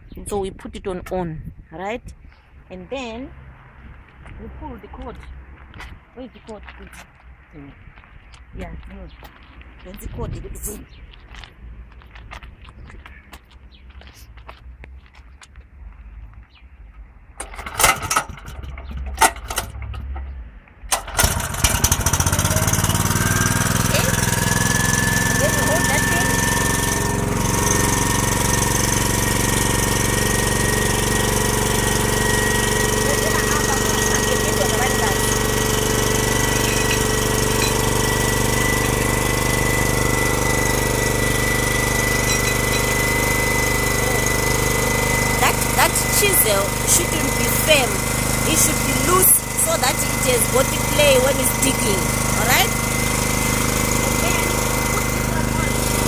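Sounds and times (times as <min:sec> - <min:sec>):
small engine running: 0:17.4 - 0:20.0, 0:20.9 - 0:56.0
starter cord tugs: 0:17.4 - 0:56.0.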